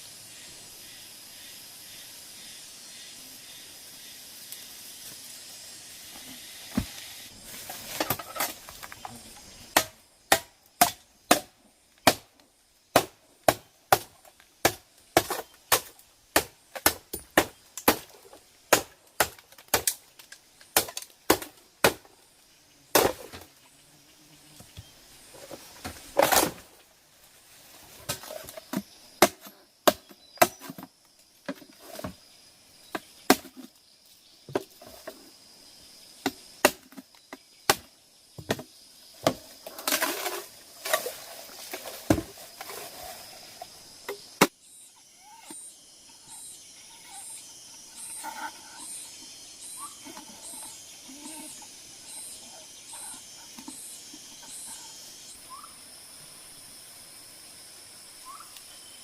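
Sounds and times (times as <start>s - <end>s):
steady high hiss: 0.0s - 15.1s, 37.4s - 59.0s.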